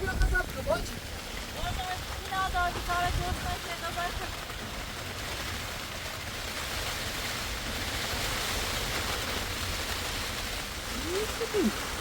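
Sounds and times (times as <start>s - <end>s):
wind buffeting microphone: 0.0s - 5.6s
heavy rain: 0.0s - 12.0s.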